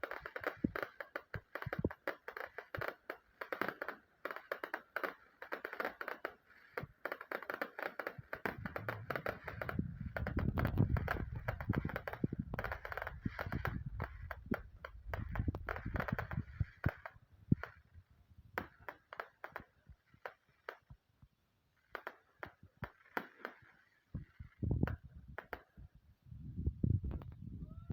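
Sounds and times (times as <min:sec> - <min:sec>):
fireworks crackling and popping: 0:00.0 - 0:26.0
low rumble: 0:08.5 - 0:16.5.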